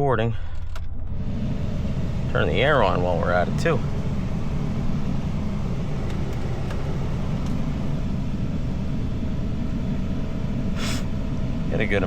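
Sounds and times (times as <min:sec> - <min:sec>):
pickup engine idling: 0:00.4 - 0:12.0.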